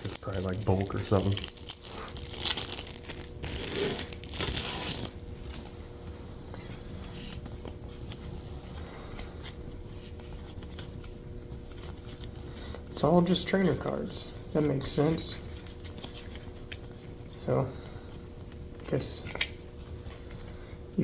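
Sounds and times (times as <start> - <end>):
plastic wrapping tearing and crinkling: 0.0 - 5.6
faint handling sounds: 0.0 - 20.9
low steady hum: 0.0 - 21.0.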